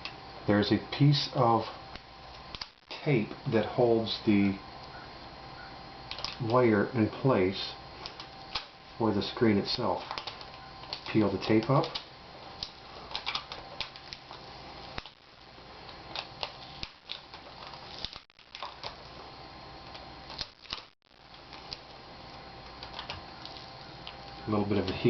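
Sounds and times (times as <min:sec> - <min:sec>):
small clicks and crackles: 0:01.9 - 0:03.0, 0:06.1 - 0:06.6, 0:08.0 - 0:08.8, 0:09.8 - 0:19.1, 0:19.8 - 0:25.0
adhesive tape peeling: 0:16.1 - 0:19.0.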